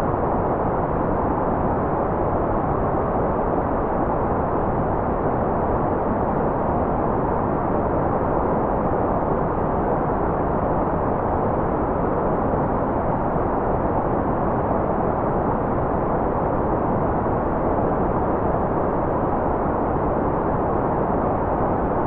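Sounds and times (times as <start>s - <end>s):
muffled white noise hiss: 0.0s - 22.0s.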